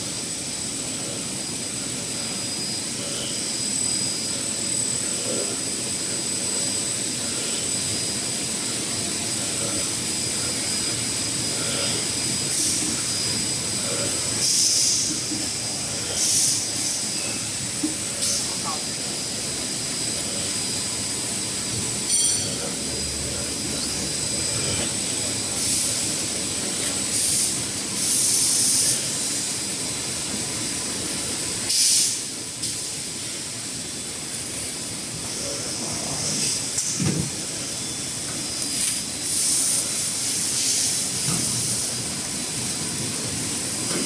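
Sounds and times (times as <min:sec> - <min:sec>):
high machine whine: 0:00.0 - 0:44.0
short hissing bursts: 0:16.1 - 0:17.2, 0:31.7 - 0:32.3, 0:38.7 - 0:41.9.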